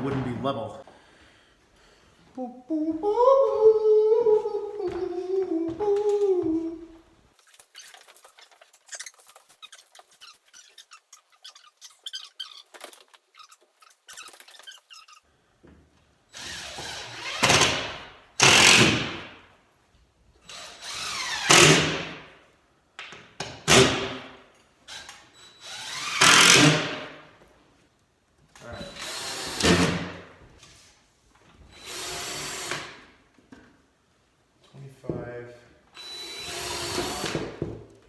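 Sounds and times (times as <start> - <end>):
power drill driving screws: 16.3 - 19.1, 20.4 - 22.0, 24.9 - 27.0, 28.8 - 30.1, 31.7 - 33.0, 36.0 - 37.6.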